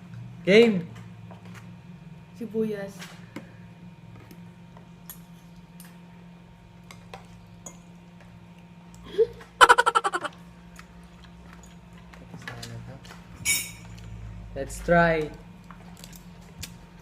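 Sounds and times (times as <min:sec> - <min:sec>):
rapid laughter: 0:09.6 - 0:10.4.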